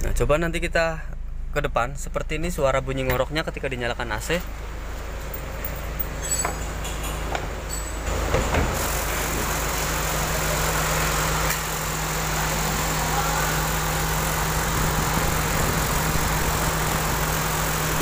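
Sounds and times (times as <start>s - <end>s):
car engine idling: 0.0s - 18.0s
compressor rough growl: 8.8s - 18.0s.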